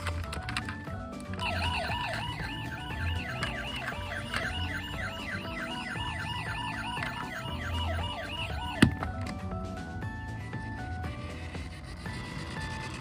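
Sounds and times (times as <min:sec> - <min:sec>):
background music: 0:00.0 - 0:13.0
electronic toy siren warbling: 0:01.4 - 0:09.1.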